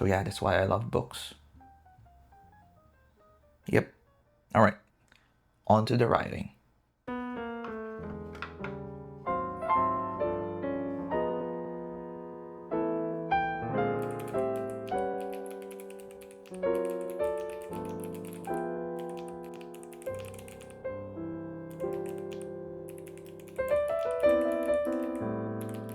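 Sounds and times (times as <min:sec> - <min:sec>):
gentle piano music: 0:07.1 - 0:25.9
typing on computer keyboard: 0:14.0 - 0:21.0, 0:21.7 - 0:25.9.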